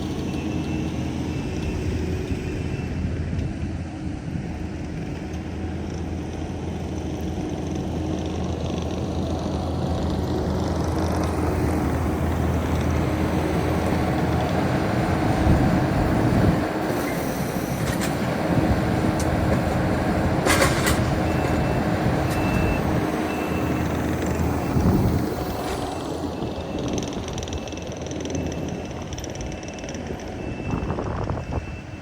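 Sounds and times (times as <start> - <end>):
diesel engine running: 0.0 - 32.0
faint high beeps: 21.3 - 24.0.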